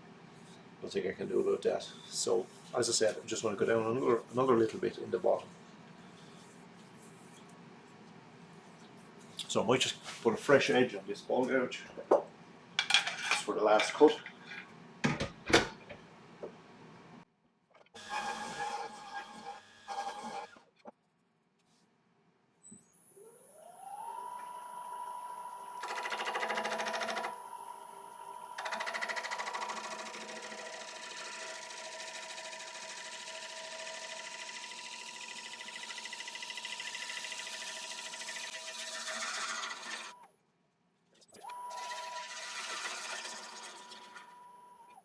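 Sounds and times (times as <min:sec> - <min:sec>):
grinder whine: 0:23.5 - 0:40.2.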